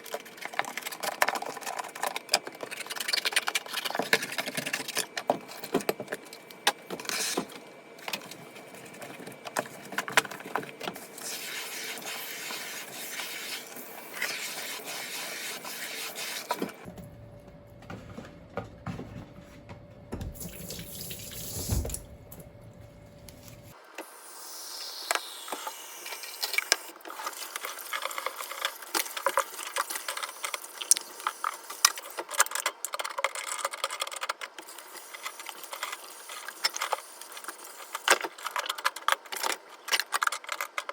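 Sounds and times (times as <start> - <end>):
water splashing in a sink: 20.3 - 22.0.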